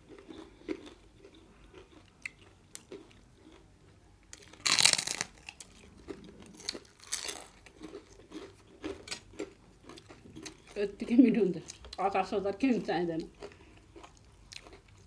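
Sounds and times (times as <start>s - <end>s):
chewing with wet mouth clicks: 0.1s - 3.6s, 5.4s - 10.8s, 13.2s - 15.0s.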